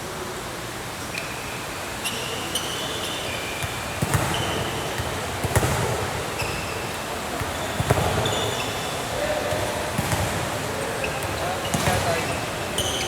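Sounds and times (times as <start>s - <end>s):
sneakers squeaking on floor: 1.1s - 13.0s
basketball bouncing on court: 3.6s - 6.7s, 7.4s - 8.6s, 9.5s - 10.5s, 11.2s - 12.9s.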